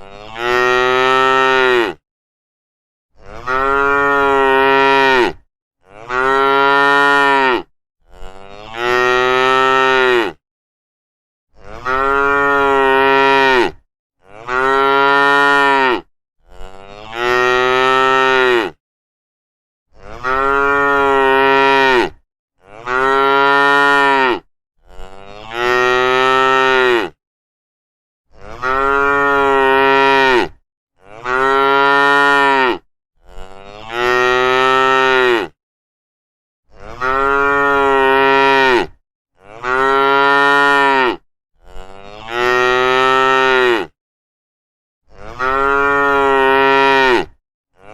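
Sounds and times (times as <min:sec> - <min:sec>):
cattle mooing: 0:03.2 - 0:10.4, 0:11.6 - 0:18.8, 0:20.1 - 0:27.2, 0:28.4 - 0:35.6, 0:36.8 - 0:43.9, 0:45.2 - 0:47.3.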